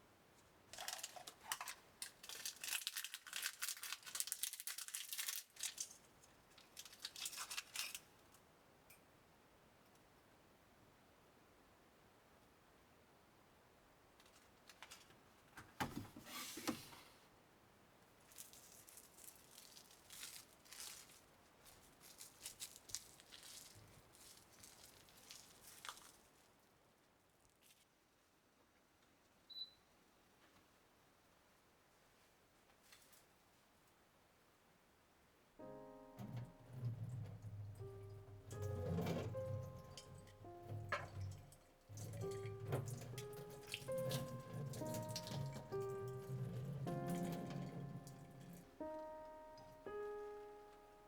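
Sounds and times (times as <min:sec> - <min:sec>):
plastic crinkling: 0:00.7 - 0:08.4, 0:18.2 - 0:26.6, 0:35.7 - 0:50.8.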